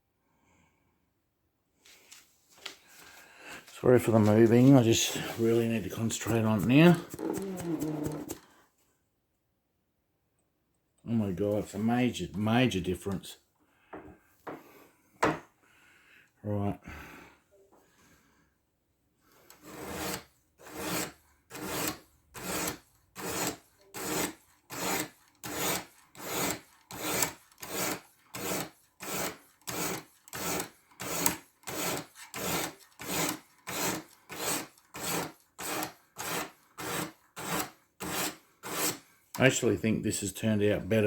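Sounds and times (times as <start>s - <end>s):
knife rasping on sharpening stone: 7.1s - 8.4s, 19.5s - 39.0s.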